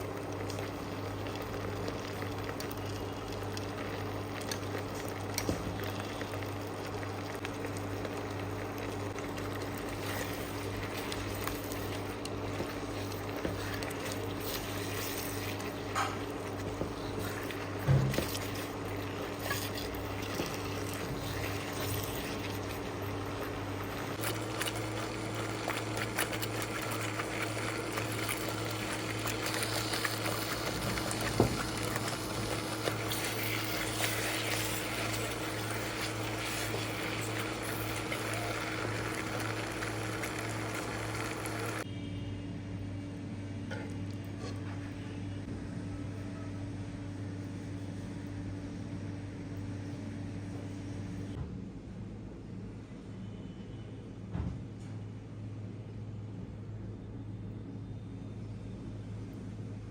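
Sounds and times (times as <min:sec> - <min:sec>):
small crackles and clicks: 0:00.0 - 0:41.8
food sizzling in a pan: 0:00.7 - 0:41.8.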